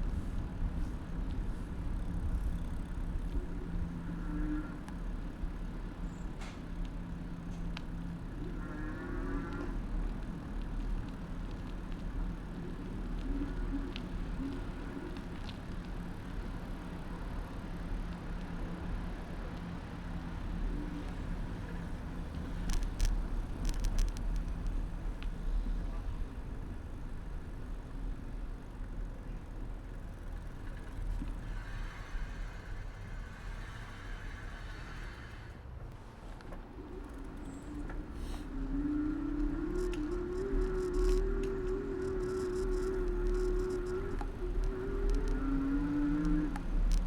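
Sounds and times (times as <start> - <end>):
bicycle ride rumble: 0.0 - 47.0
car traffic: 0.1 - 47.0
high whine: 36.7 - 47.0.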